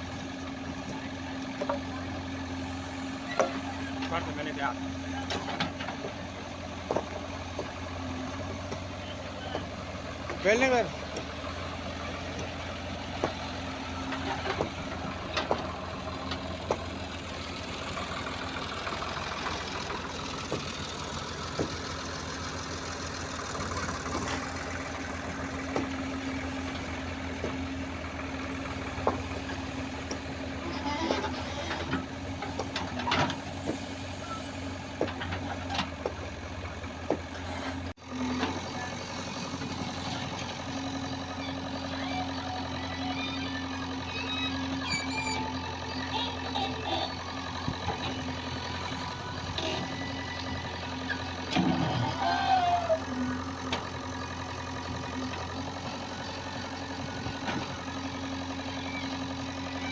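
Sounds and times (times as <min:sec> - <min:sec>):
diesel digger engine running: 0:00.0 - 0:59.9.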